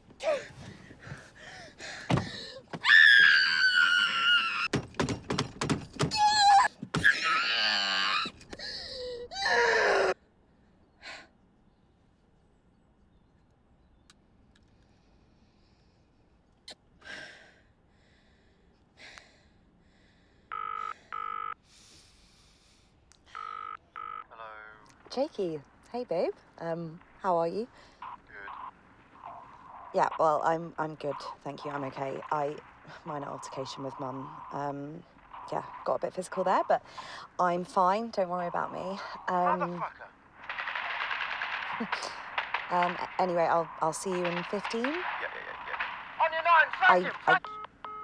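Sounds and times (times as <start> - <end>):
brief rustle: 0.0 - 2.9
knocks and thuds of scuffle: 0.0 - 2.9, 4.7 - 7.2
wavering high cry: 2.3 - 4.7, 6.0 - 10.2
woman screaming: 2.4 - 4.7, 6.1 - 10.2
phone ringback tone: 20.5 - 21.6, 23.3 - 24.3, 47.3 - 48.0.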